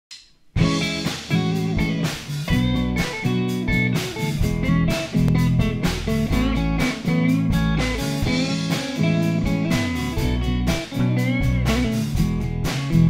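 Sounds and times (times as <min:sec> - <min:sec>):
bluesy guitar tune with beat: 0:00.6 - 0:13.0.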